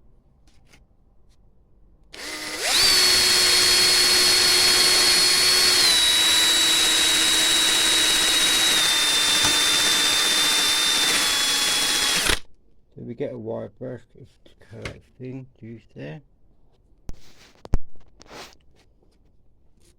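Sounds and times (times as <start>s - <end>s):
power tool wire brush whining: 2.2s - 12.4s.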